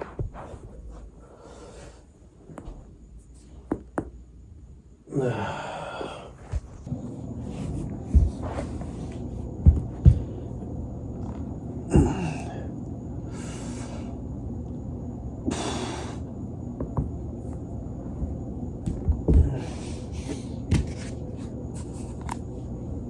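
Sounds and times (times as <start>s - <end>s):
dull thumps: 8.0s - 10.5s.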